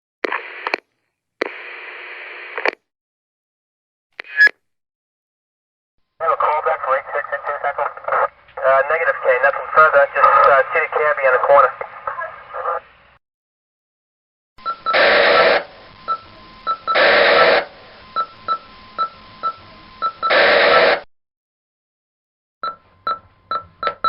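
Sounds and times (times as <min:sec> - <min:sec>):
radio static hiss: 0:06.2 - 0:13.2, 0:14.9 - 0:18.1, 0:20.3 - 0:21.0.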